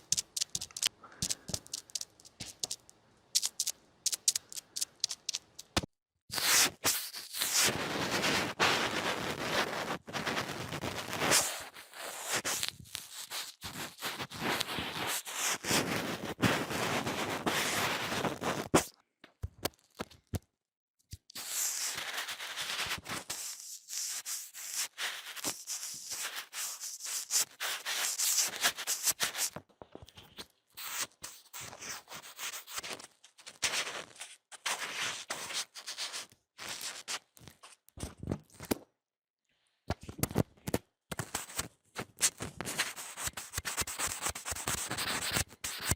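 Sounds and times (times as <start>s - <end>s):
sharp clicks and taps: 0.0s - 5.9s
rubbing and scratching: 0.0s - 18.9s, 21.4s - 37.8s, 41.1s - 45.9s.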